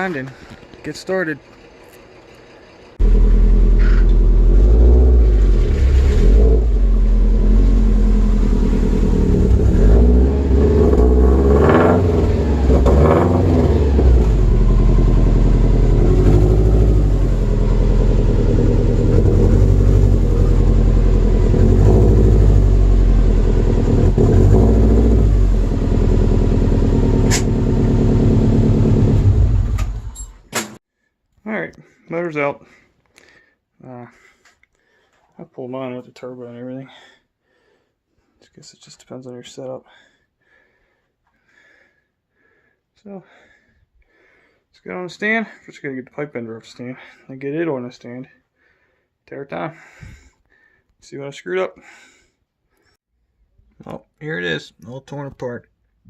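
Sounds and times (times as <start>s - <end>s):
truck engine revving: 3.0s - 30.1s.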